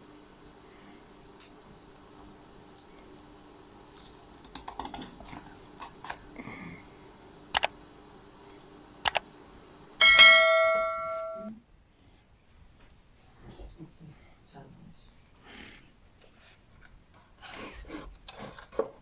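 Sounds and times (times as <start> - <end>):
sharp double clicks: 9.0 - 9.2
loud ringing strike: 10.0 - 11.6.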